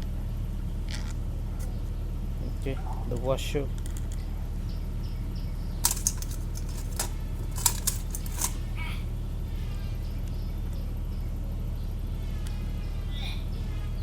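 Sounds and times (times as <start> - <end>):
steady low hum: 0.0 - 14.0
metallic clicks and clinks of parts: 5.8 - 8.8.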